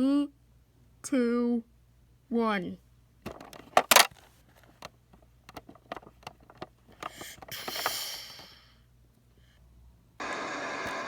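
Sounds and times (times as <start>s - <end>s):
plastic toys clicking: 3.3s - 8.5s.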